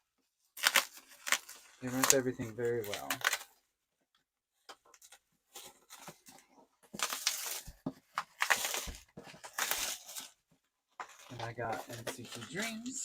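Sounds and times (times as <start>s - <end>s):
packaging crinkling and tearing: 0.6s - 3.6s, 6.9s - 10.4s, 11.0s - 13.0s.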